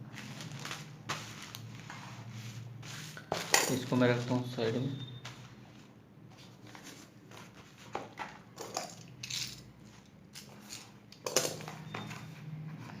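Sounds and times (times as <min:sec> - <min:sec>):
packaging rustling: 0:00.0 - 0:01.8.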